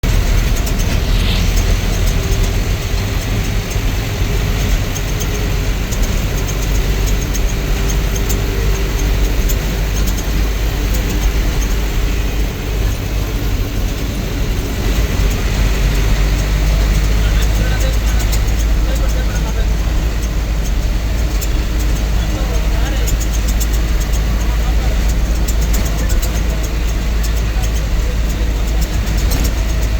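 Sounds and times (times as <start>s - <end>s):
bus engine drone: 0.0s - 29.9s
road rumble: 0.0s - 29.9s
faint rattling clicks: 14.8s - 29.9s.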